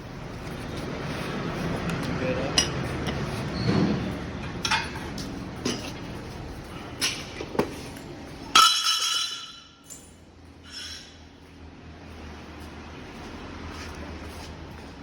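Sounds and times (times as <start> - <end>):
ringing metal clank: 8.5 - 10.1.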